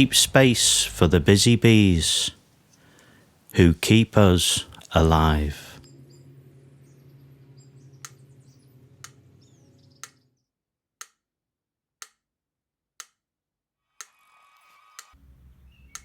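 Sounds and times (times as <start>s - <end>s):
low background hum: 0.0s - 10.0s
clock ticking: 13.0s - 13.2s.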